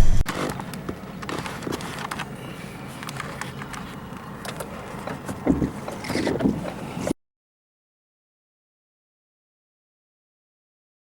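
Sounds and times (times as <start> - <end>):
wind and road noise from vehicle: 0.0 - 7.2
knocks: 5.3 - 6.7.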